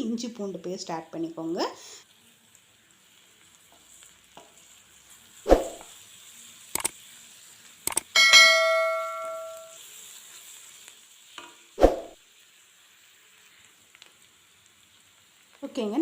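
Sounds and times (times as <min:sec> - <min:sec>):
onions sizzling in a pan: 0:00.0 - 0:16.0
metal spoon clanging on a pan: 0:08.2 - 0:09.8.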